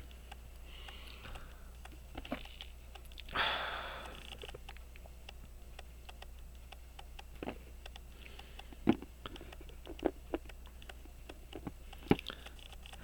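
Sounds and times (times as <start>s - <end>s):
steady low hum: 0.0s - 13.0s
tweezers clicking on metal parts: 3.9s - 13.0s.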